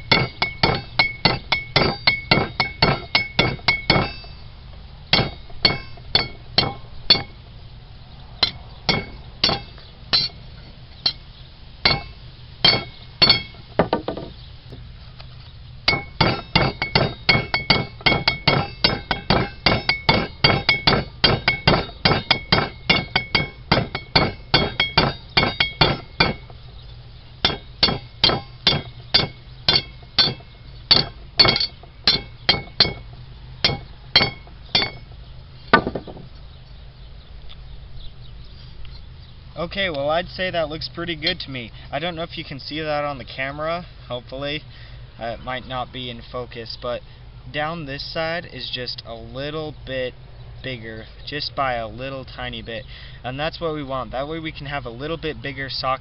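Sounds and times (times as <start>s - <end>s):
hammer striking metal on anvil: 0.0s - 4.4s, 5.1s - 7.3s, 8.4s - 10.4s, 11.8s - 14.0s, 15.9s - 26.5s, 27.4s - 35.1s.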